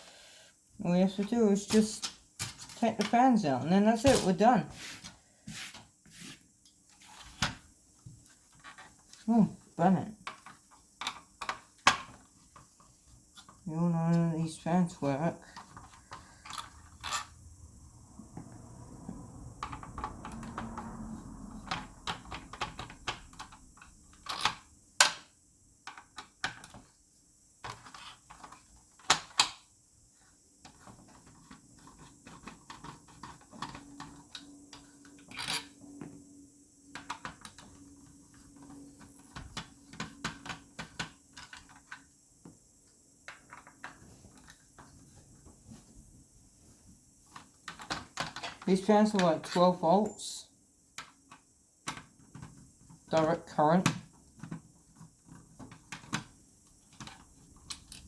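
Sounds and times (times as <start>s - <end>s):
plastic parts clicking and knocking: 10.2s - 13.6s, 21.6s - 26.9s, 27.6s - 29.7s, 30.6s - 36.1s, 36.9s - 42.1s, 43.2s - 45.8s, 47.3s - 49.6s, 50.9s - 58.0s.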